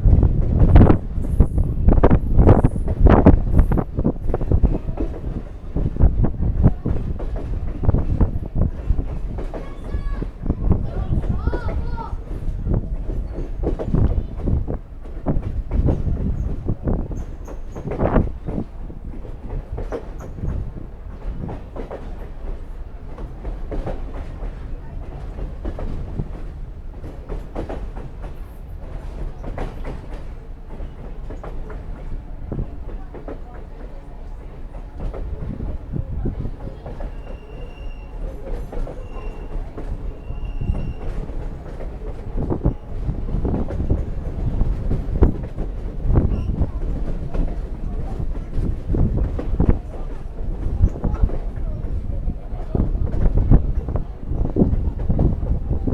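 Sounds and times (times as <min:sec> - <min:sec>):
train rumbling on track: 0:00.0 - 0:55.9
wheel squeal: 0:37.0 - 0:41.2.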